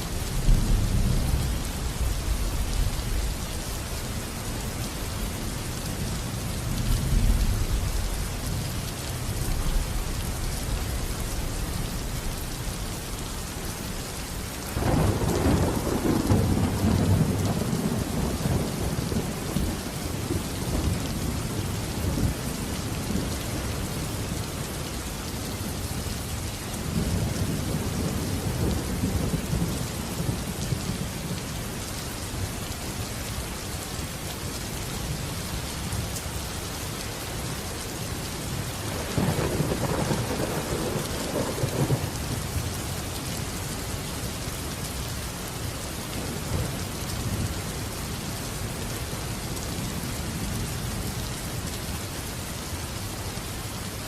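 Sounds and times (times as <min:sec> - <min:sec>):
heavy rain: 0:00.0 - 0:54.0
rolling thunder: 0:38.9 - 0:42.1.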